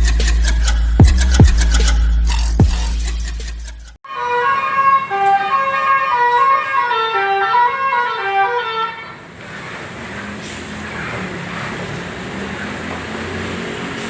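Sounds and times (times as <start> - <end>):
tuned bus air horns tune: 4.0 - 9.4
traffic noise: 4.1 - 14.0
engine noise: 8.3 - 14.0.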